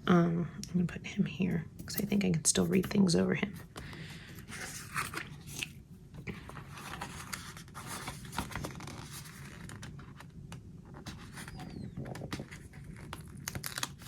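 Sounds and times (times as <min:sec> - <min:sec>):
paper rustling: 0:03.6 - 0:10.3, 0:10.9 - 0:14.0.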